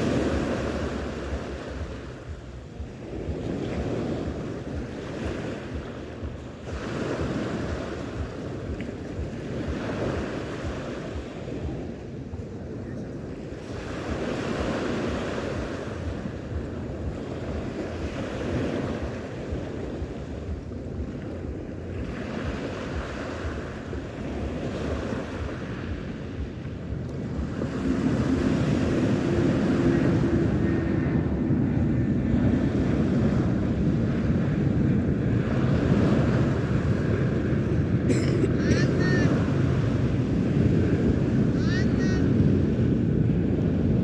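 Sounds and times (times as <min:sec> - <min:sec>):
low rumble: 0:00.0 - 0:13.2, 0:23.0 - 0:38.0
sea waves washing in: 0:00.0 - 0:44.0
wind buffeting the microphone: 0:00.0 - 0:44.0.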